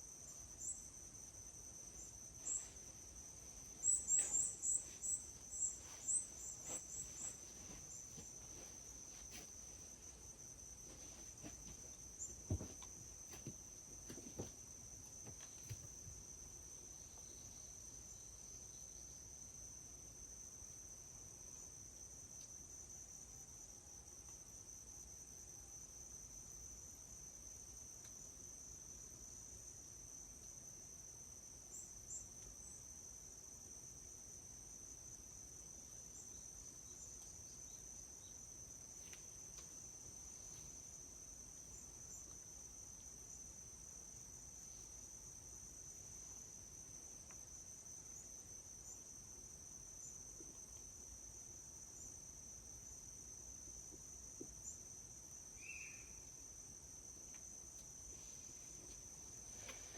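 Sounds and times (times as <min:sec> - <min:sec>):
insects trilling high-pitched: 0:01.9 - 0:08.8, 0:55.5 - 0:56.6.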